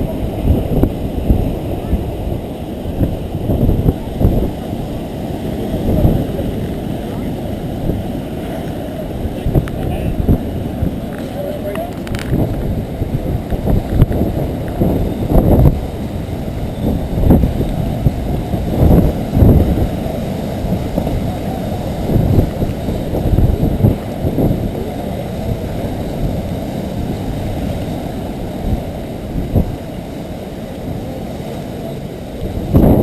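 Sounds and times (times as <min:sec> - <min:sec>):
wind buffeting microphone: 0:00.0 - 0:33.0.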